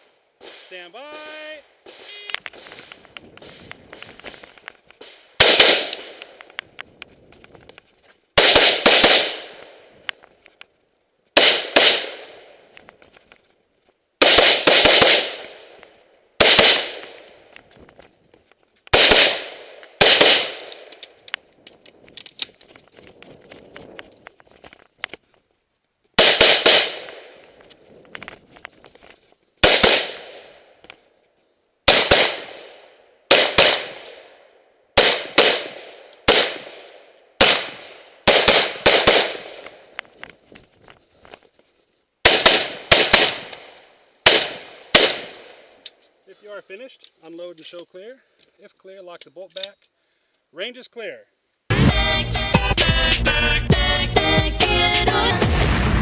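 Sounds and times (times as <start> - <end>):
rifle gunshots with echo: 5.0 - 6.3, 8.4 - 9.8, 11.4 - 12.6, 14.2 - 15.8, 16.4 - 17.4, 18.9 - 20.9, 26.2 - 27.4, 29.6 - 30.6, 31.9 - 34.4, 35.0 - 39.9, 42.2 - 45.7.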